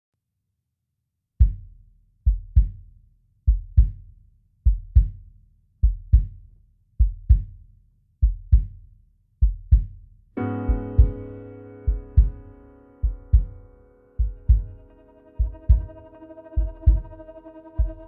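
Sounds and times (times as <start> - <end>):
bass drum deep thumps: 1.4 - 1.7, 3.5 - 4.0, 4.7 - 5.2, 5.8 - 6.4, 7.0 - 7.6, 8.2 - 8.8, 9.4 - 10.0, 10.7 - 16.0, 16.6 - 17.2, 17.8 - 18.0.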